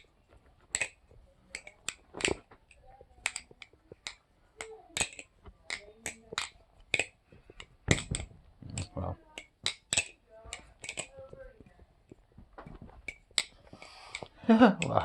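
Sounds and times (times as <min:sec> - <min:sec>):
balisong trainer clicking: 0:03.2 - 0:11.6.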